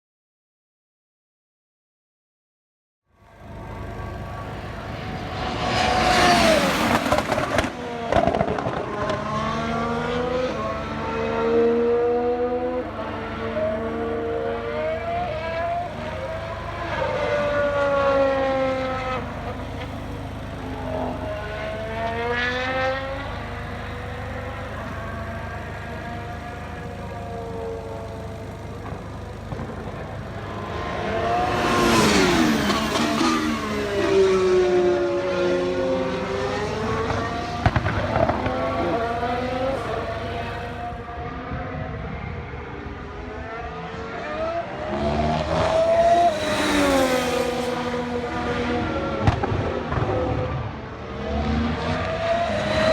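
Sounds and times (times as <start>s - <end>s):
racing car engine passing: 3.3s - 52.9s
exhaust crackling and popping: 3.4s - 9.4s, 15.0s - 34.6s, 35.6s - 41.0s, 49.0s - 51.1s.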